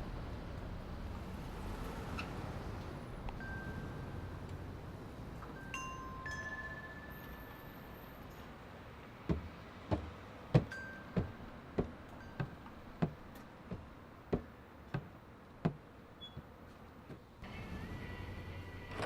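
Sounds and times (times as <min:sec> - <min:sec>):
dull knocks: 0:09.2 - 0:15.8.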